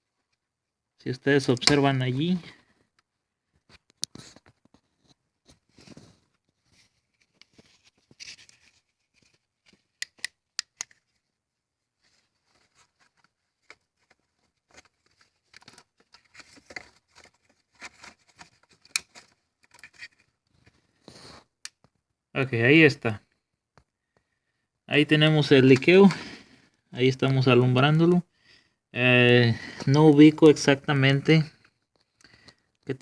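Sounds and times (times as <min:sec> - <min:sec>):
hands handling camera parts: 0:02.8 - 0:11.3, 0:12.0 - 0:20.8, 0:25.5 - 0:26.4, 0:29.3 - 0:32.9.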